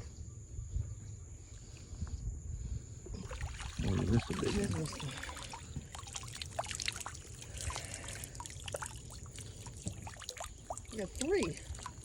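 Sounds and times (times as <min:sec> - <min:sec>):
water trickling and dripping: 0:03.2 - 0:12.0
small splashes and clicks: 0:03.4 - 0:12.0.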